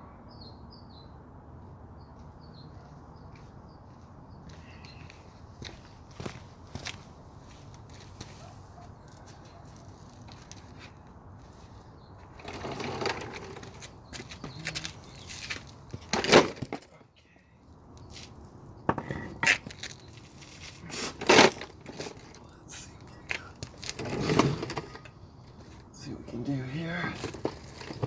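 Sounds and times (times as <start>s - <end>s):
metal scraping: 23.8s - 25.2s.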